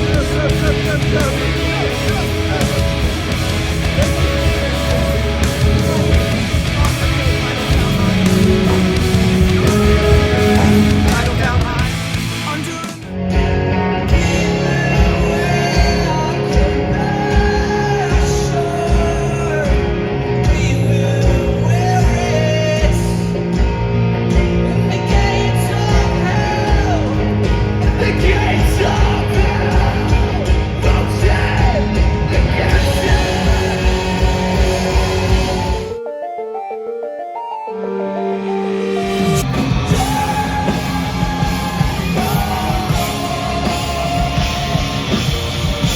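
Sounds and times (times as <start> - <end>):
sung and shouted vocals: 0.0 - 13.0, 13.8 - 36.0, 38.1 - 45.9
loud rock music: 0.0 - 36.0, 37.9 - 45.9.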